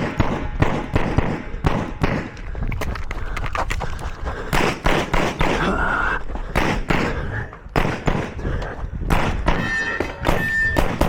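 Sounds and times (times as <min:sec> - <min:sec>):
rapid pistol shots: 0:00.0 - 0:02.4, 0:04.5 - 0:05.7, 0:06.5 - 0:07.2, 0:07.8 - 0:08.4, 0:09.1 - 0:11.0.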